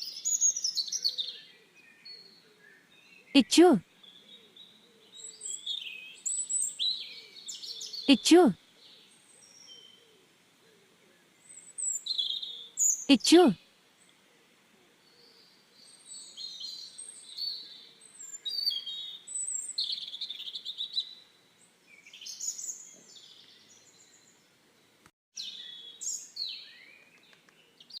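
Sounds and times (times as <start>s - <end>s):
birds chirping and twittering: 10.8s - 13.1s, 14.9s - 28.0s.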